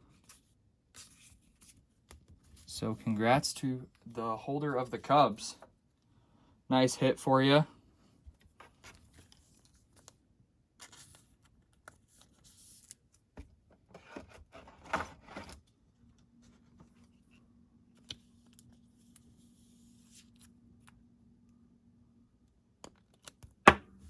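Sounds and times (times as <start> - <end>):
cards and wrappers rustling: 10.8 - 13.4.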